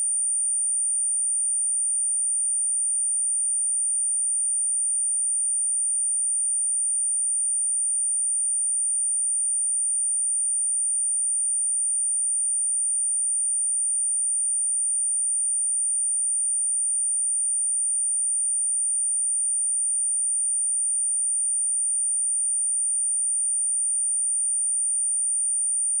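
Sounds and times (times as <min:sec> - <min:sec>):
high-pitched sine test tone: 0:09.3 - 0:26.0.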